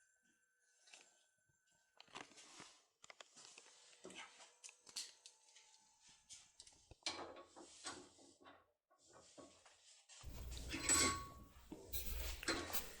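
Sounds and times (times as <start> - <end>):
keys clattering: 10.3 - 13.0.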